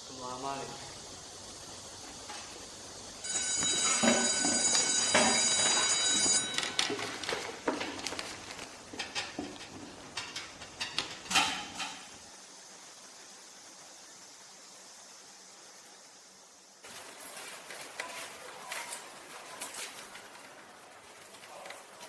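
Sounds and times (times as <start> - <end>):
steady ringing: 3.2 - 7.6.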